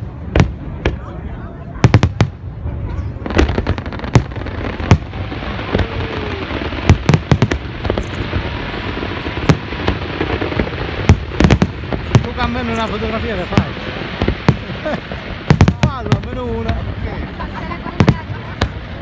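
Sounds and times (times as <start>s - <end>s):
fireworks going off: 0.0s - 19.0s
sharp firework bangs: 3.2s - 16.9s.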